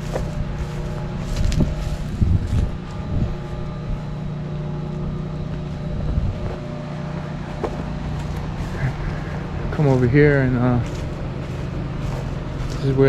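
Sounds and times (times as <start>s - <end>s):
engine running: 0.0s - 13.0s
wind bumps on microphone: 1.3s - 4.1s, 5.8s - 6.7s.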